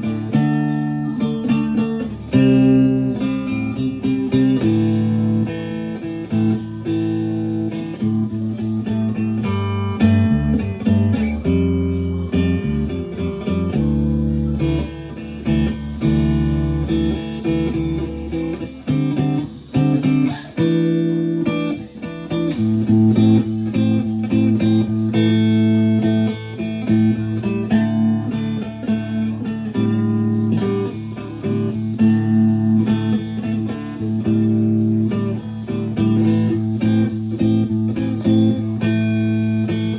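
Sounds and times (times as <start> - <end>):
electric guitar plucked notes and chords: 0.0 - 39.9.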